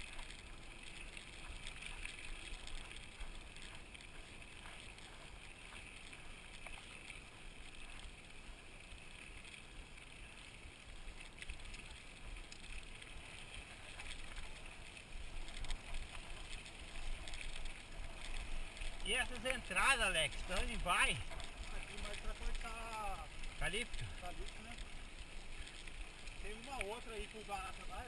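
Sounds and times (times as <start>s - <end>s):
small clicks: 0.0s - 28.0s
tyre noise on dirt trail: 0.0s - 28.0s.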